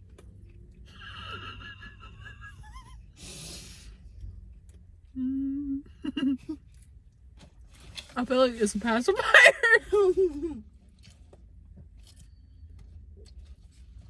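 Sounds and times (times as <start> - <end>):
sharp hissing breath: 3.2 - 4.0
person humming mmm: 5.2 - 6.6.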